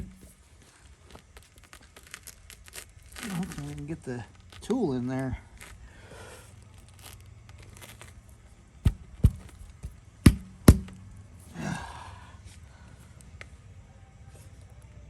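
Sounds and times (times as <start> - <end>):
knocks on a tire: 0.0 - 0.3, 8.8 - 11.1
man grunting: 11.5 - 12.3.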